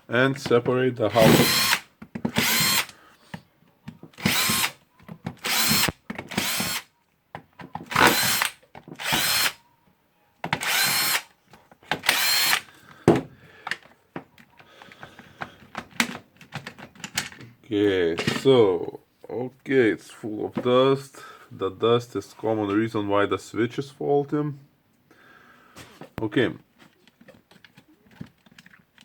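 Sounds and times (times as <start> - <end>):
cordless drill bursts: 1.1 - 2.9, 4.2 - 4.8, 5.4 - 6.9, 7.9 - 9.6, 10.6 - 11.2, 12.0 - 12.6.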